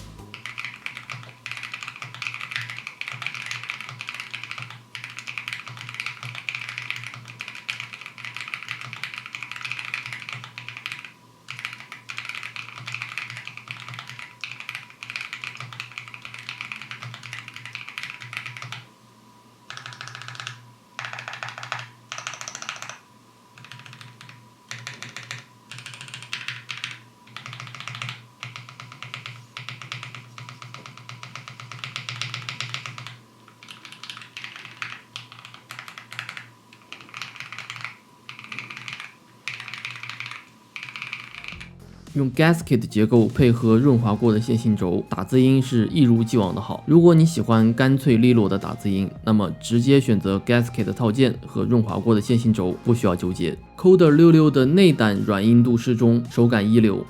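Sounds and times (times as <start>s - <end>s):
mechanical keyboard typing: 0.0s - 18.9s, 19.7s - 23.0s, 23.6s - 41.8s.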